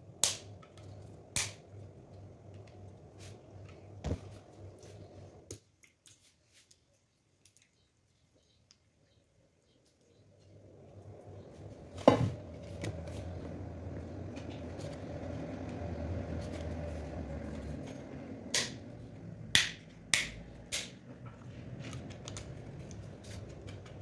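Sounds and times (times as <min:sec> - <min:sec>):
low hum: 0:00.0 - 0:05.5, 0:10.0 - 0:24.0.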